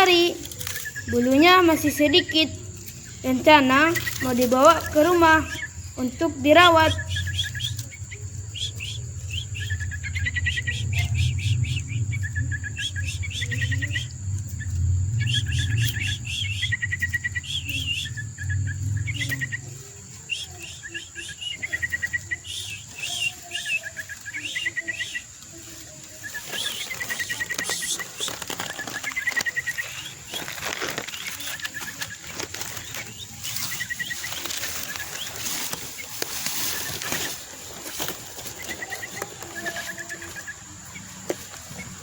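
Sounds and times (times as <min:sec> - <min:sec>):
high insect drone: 0:00.0 - 0:42.0
nestling begging chirps: 0:00.0 - 0:42.0
low rumble: 0:02.6 - 0:20.2.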